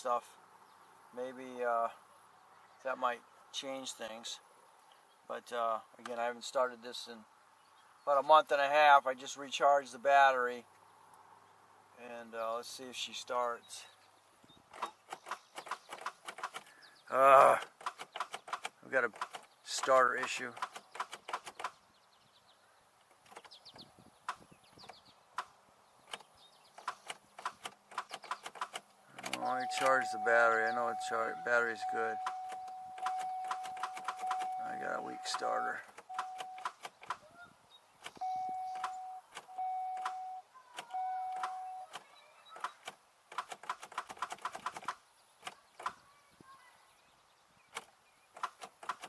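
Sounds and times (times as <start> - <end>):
electronic warning chime: 29.3 - 35.4, 36.1 - 36.6, 38.2 - 41.9.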